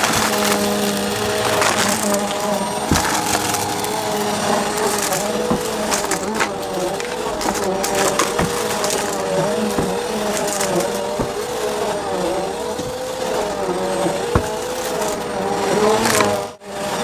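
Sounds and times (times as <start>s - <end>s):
debris clicking in vacuum: 0.0s - 16.6s
vacuum cleaner motor whine: 0.0s - 17.0s.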